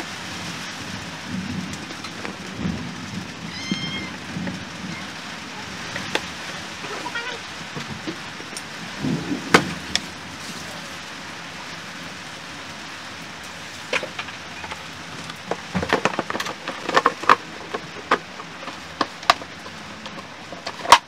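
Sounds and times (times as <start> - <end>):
steady hiss: 0.0 - 15.8.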